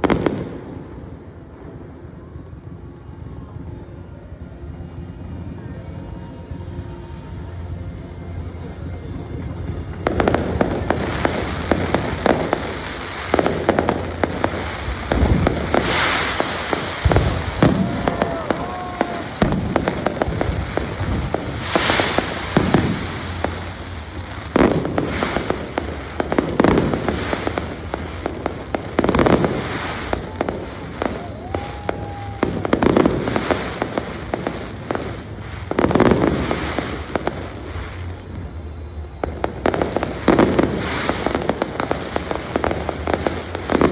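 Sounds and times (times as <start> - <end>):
fireworks crackling: 0.0 - 43.9.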